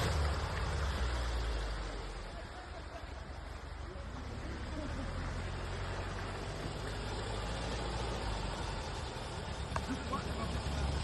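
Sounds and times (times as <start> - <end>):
car engine running: 4.3 - 11.0.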